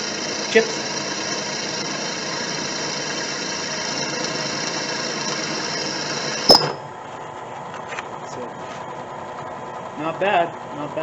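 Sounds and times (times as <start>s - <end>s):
drill bit cutting: 0.0s - 6.8s
drill press motor hum: 0.0s - 6.8s.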